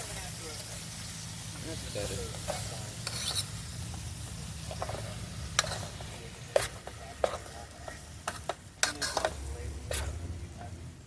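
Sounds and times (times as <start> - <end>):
vegetables sizzling in grease: 0.0 - 11.0
utensil clicking against pan: 8.2 - 10.2.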